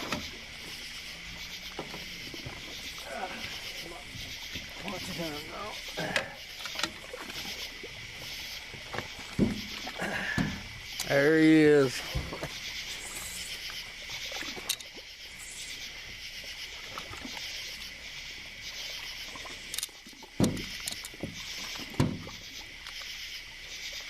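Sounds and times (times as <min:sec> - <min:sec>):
night insects chorus: 0:00.0 - 0:24.0
dull knocks: 0:08.8 - 0:10.7, 0:20.4 - 0:21.4, 0:22.0 - 0:22.3.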